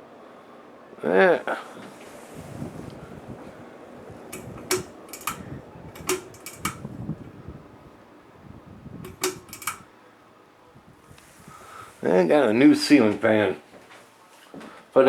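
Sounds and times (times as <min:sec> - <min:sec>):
ceiling fan whooshing: 0:00.0 - 0:15.0
sharp clicks: 0:04.3 - 0:06.9, 0:09.0 - 0:09.9.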